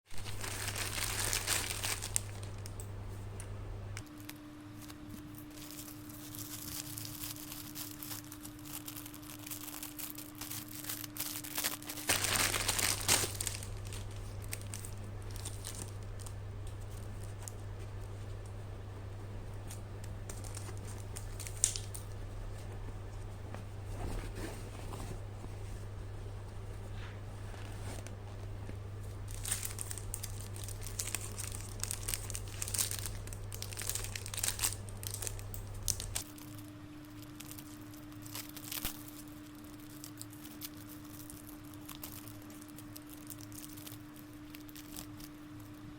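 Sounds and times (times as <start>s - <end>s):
plastic packaging crinkling and tearing: 0.1s - 2.9s, 4.0s - 18.6s, 19.5s - 23.2s, 27.0s - 45.9s
faint steady hum: 0.1s - 45.9s.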